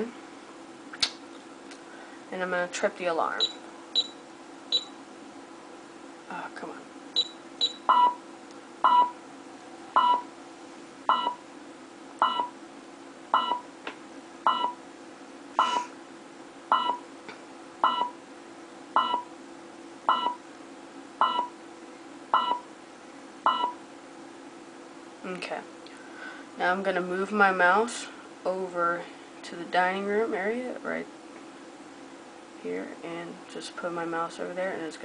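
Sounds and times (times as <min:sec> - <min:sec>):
alarm keypad beeping: 0:07.2 - 0:08.2, 0:08.8 - 0:09.2, 0:10.0 - 0:10.2, 0:11.1 - 0:11.4, 0:12.2 - 0:12.5, 0:13.4 - 0:13.6, 0:14.5 - 0:14.8, 0:16.7 - 0:17.0, 0:17.8 - 0:18.2, 0:19.0 - 0:19.3, 0:20.1 - 0:20.4, 0:21.2 - 0:21.5, 0:22.4 - 0:22.6, 0:23.5 - 0:23.8.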